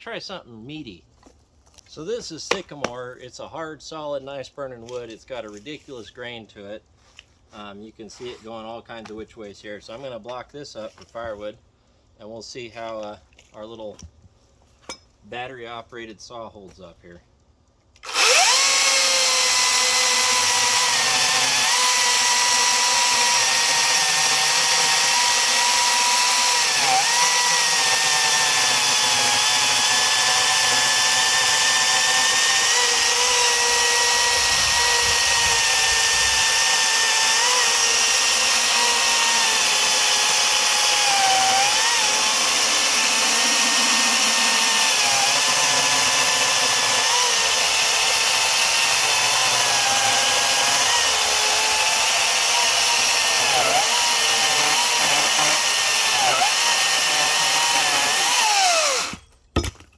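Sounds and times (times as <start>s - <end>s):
electric chainsaw cutting wood: 18.0s - 59.2s.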